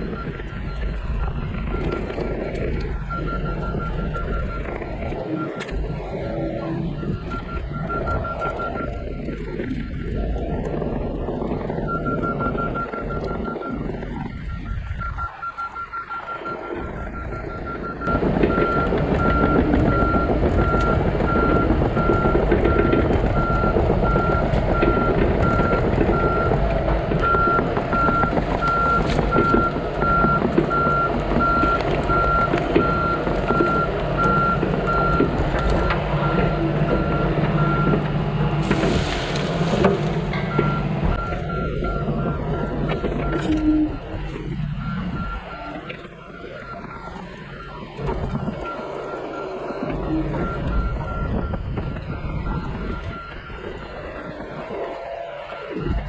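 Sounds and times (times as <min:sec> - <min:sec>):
travel alarm beeping: 0:00.0 - 0:26.5, 0:40.3 - 0:56.0
excavator diesel engine running: 0:00.0 - 0:56.0.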